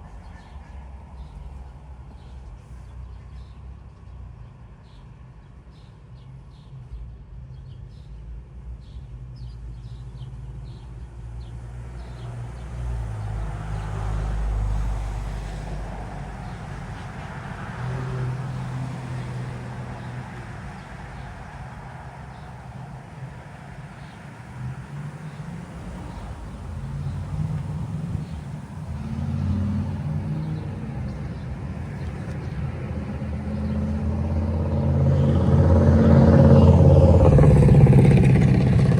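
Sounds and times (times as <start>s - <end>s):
vehicle engine passing: 11.5s - 38.9s.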